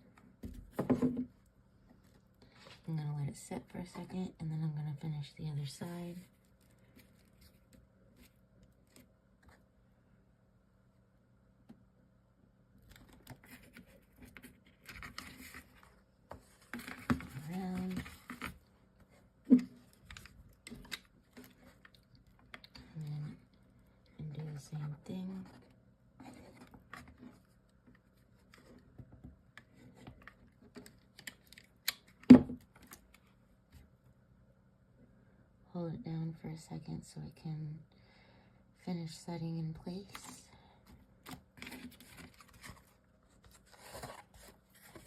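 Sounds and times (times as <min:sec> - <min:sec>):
rustling of craft pieces: 0:40.2 - 0:45.0.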